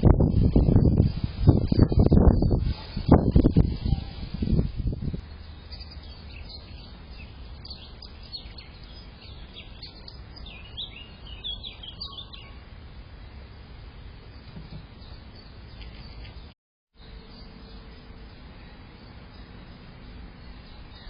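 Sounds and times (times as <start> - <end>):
small birds chirping: 4.8 - 12.6, 14.2 - 21.0.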